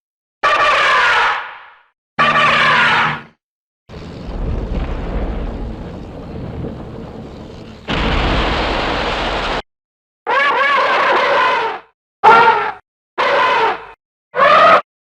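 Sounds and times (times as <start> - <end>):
burst of rushing noise: 3.9 - 9.6
rumbling crash: 3.9 - 9.7.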